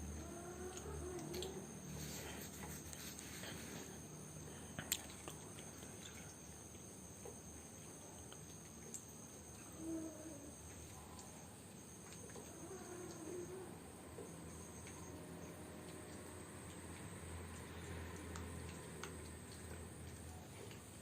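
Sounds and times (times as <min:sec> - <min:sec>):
crickets chirping: 0:00.0 - 0:21.0
faint wavering calls: 0:12.2 - 0:15.6.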